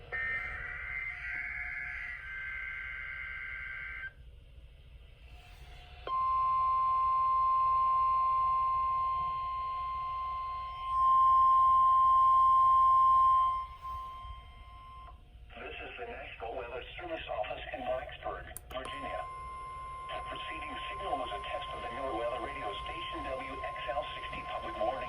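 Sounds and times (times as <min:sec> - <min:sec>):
steady alarm tone: 0:00.0 - 0:04.1, 0:06.1 - 0:15.2, 0:18.9 - 0:25.0.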